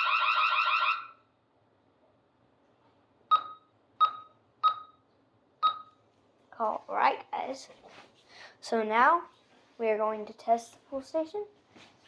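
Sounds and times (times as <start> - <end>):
security alarm pulsing: 0.0 - 1.2
keypad beeps: 3.3 - 5.0, 5.6 - 6.0.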